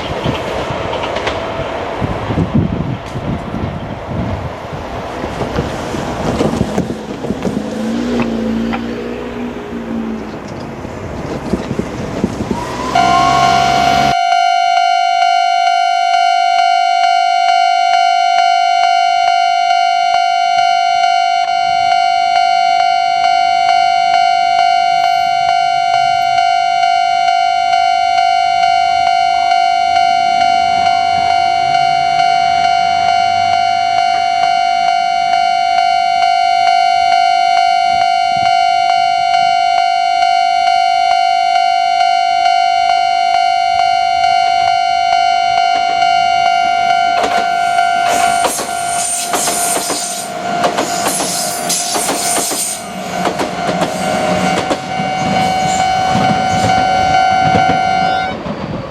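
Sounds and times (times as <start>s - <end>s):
train rumble: 0.0s - 14.2s, 45.9s - 58.9s
level crossing warning bell: 13.0s - 49.0s, 52.8s - 58.5s.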